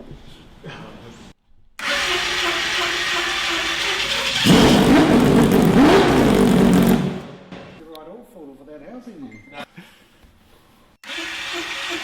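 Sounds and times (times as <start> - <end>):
loud motor whirring: 1.8 - 7.6, 11.0 - 12.0.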